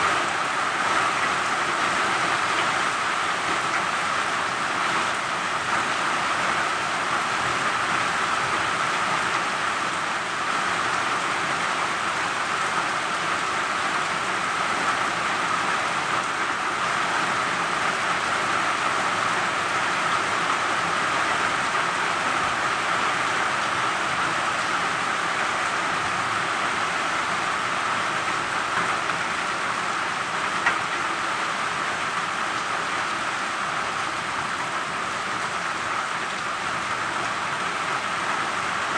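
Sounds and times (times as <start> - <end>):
steady rain falling: 0.0 - 38.9
small tick: 30.6 - 30.8.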